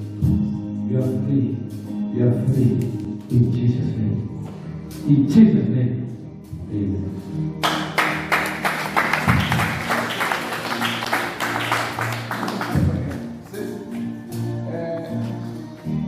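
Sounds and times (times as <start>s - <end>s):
fast percussive beat: 7.8s - 10.5s.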